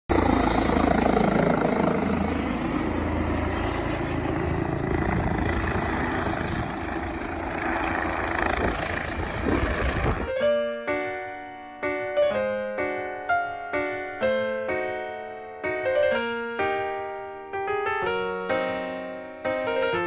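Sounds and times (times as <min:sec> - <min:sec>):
helicopter rotor and engine: 0:00.1 - 0:10.3
piano music: 0:10.1 - 0:20.0.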